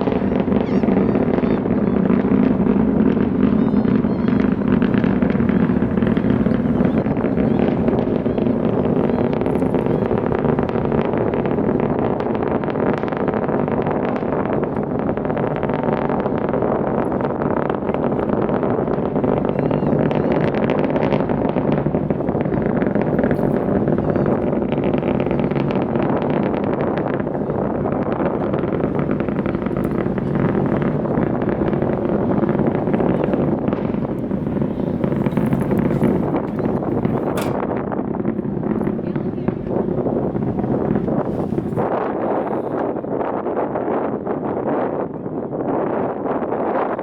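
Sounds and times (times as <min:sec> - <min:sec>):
distant rocket engine rumble: 0:00.0 - 0:47.0
wind buffeting microphone: 0:00.0 - 0:47.0.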